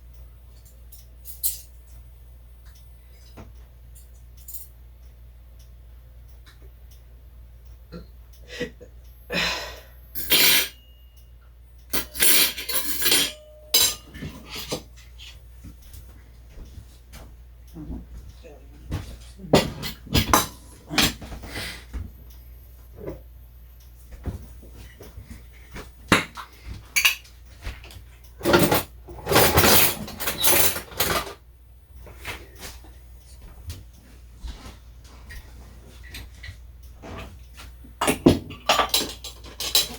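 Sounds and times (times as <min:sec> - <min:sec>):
dishes scraping and rustling: 0:10.2 - 0:10.9, 0:12.0 - 0:15.4, 0:26.4 - 0:31.4, 0:38.3 - 0:39.9
dishes and cutlery clinking: 0:10.2 - 0:11.0, 0:12.0 - 0:15.1, 0:18.9 - 0:21.3, 0:26.1 - 0:31.4, 0:38.0 - 0:39.9
dishes clinking: 0:10.2 - 0:11.0, 0:12.0 - 0:14.9, 0:38.0 - 0:39.9.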